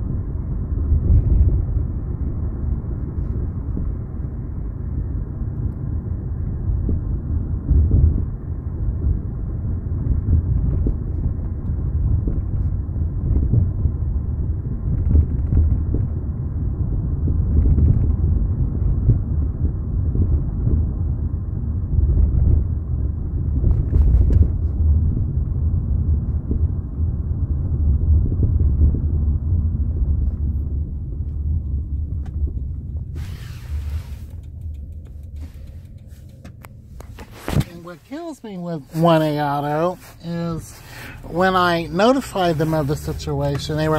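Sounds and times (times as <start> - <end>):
road rumble inside car: 0.0 - 43.9
short hiss: 33.2 - 34.6.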